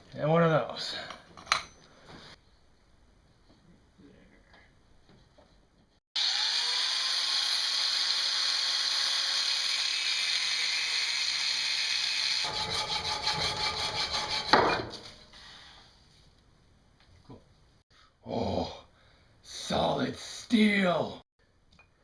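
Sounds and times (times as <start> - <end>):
power tool whining: 6.2 - 12.6.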